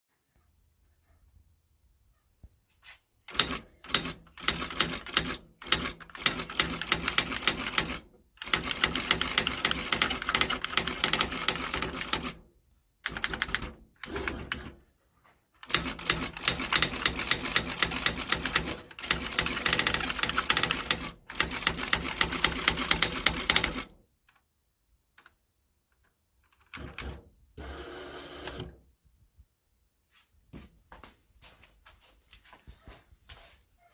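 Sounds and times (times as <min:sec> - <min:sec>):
electric typewriter typing: 0:03.3 - 0:12.4, 0:13.0 - 0:14.8, 0:15.6 - 0:24.0, 0:26.7 - 0:27.8.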